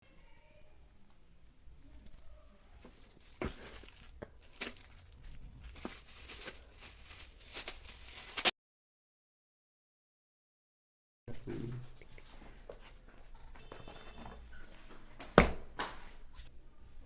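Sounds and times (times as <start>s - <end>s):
packaging tearing and crinkling: 2.8s - 8.5s.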